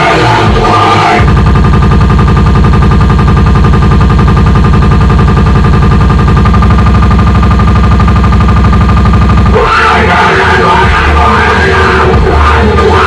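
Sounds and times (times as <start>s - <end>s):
distorted electronic pulse stutter: 0.0s - 13.0s.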